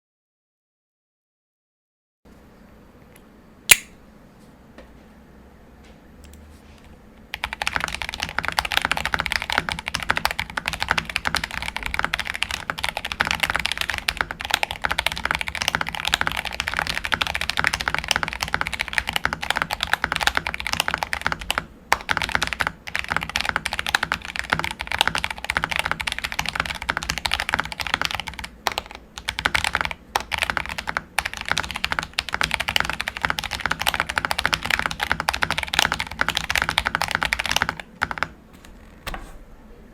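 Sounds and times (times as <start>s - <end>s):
fast mechanical keyboard typing: 7.3s - 38.4s.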